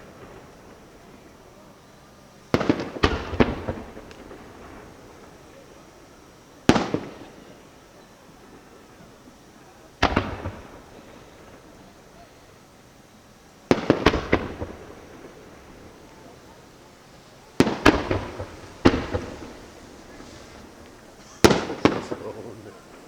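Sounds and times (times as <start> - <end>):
fireworks bangs with crackle: 0.0 - 23.0.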